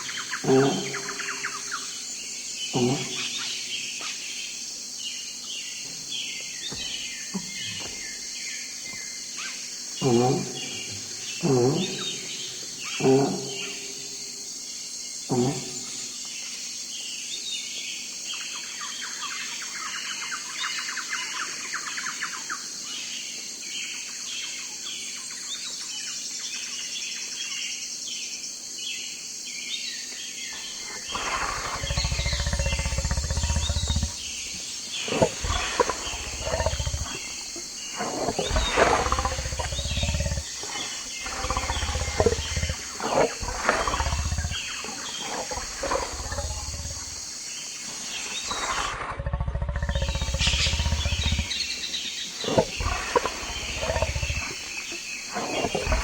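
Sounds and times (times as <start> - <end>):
small birds chirping: 0.0 - 14.1, 30.5 - 56.0
insect hiss: 0.0 - 56.0
big cat growling and roaring: 0.4 - 1.5, 2.7 - 3.5, 10.0 - 14.1, 15.3 - 16.0, 30.7 - 47.2, 48.4 - 51.8, 52.4 - 56.0.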